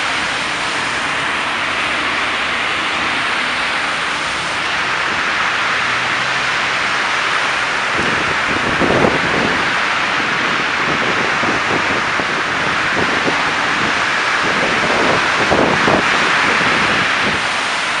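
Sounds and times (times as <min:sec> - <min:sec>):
traffic hiss on slushy streets: 0:00.0 - 0:18.0
wind buffeting microphone: 0:06.8 - 0:18.0.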